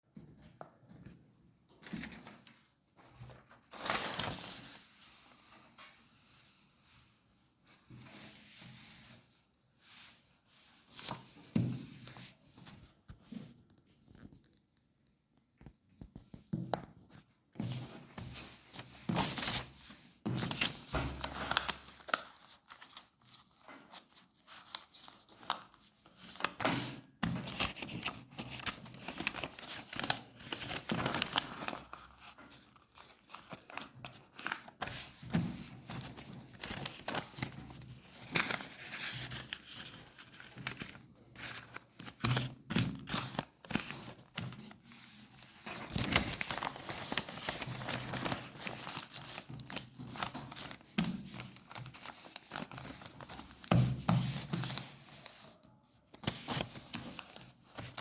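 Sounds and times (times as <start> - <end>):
paper rustling and crinkling: 1.8 - 6.6, 17.1 - 58.0.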